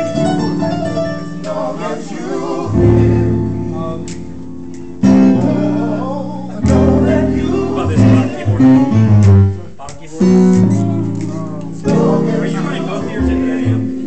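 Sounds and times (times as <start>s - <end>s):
deep bass notes: 0.0s - 14.0s
person singing: 5.3s - 9.1s
live band music: 6.7s - 14.0s.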